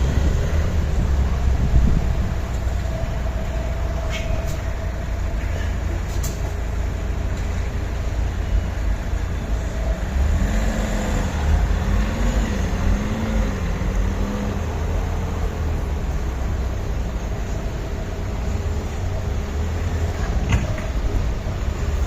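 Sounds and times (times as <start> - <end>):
steady low rumble: 0.0 - 10.3
vehicle engine passing: 9.8 - 16.6.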